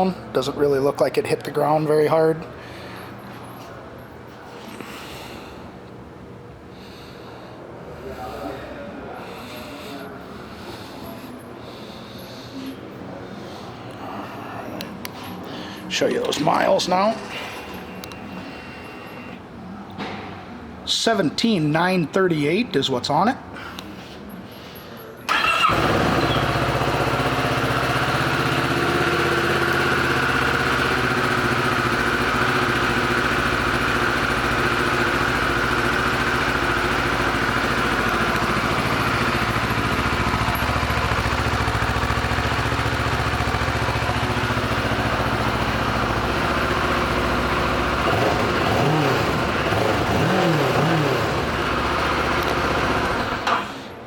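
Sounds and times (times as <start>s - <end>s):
motorcycle engine starting and idling: 25.2s - 54.0s.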